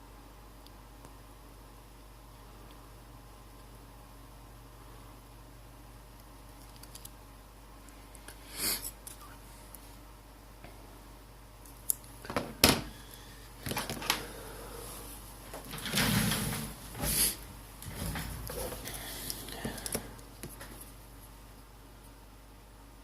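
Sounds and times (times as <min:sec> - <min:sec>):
rustling and scraping of tools: 0:14.9 - 0:21.0.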